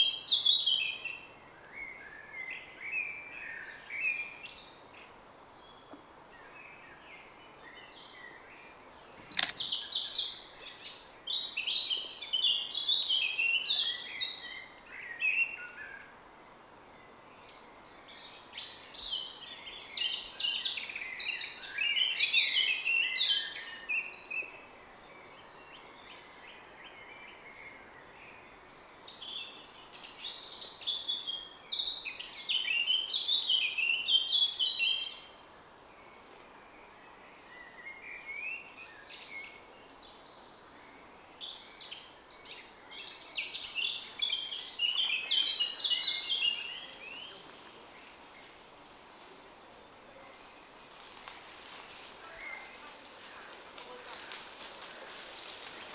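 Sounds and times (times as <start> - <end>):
sharp click: 9.2 - 9.7
faint outdoor background: 9.2 - 9.8.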